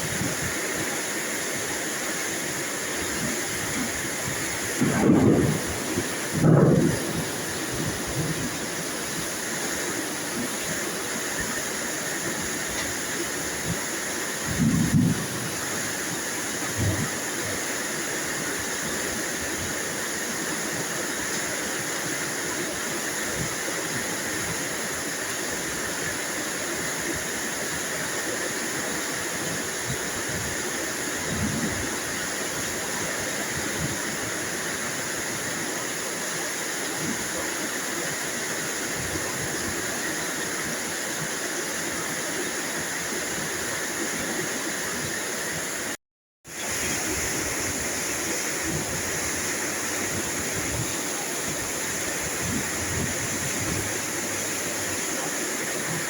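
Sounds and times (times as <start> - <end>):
steady rain falling: 0.0 - 46.0, 46.6 - 56.0.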